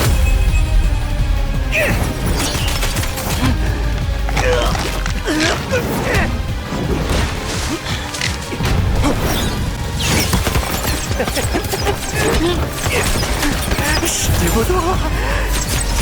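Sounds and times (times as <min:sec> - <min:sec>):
dramatic background music: 0:00.0 - 0:16.0.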